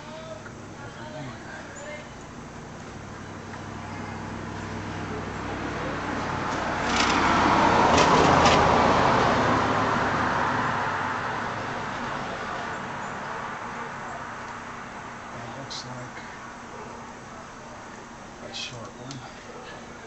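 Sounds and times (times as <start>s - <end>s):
vehicle passing by: 2.8s - 16.5s.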